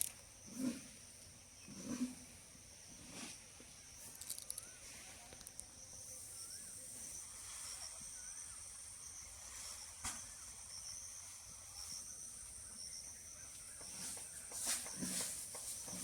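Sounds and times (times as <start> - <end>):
high-pitched insect chirring: 4.1 - 6.7.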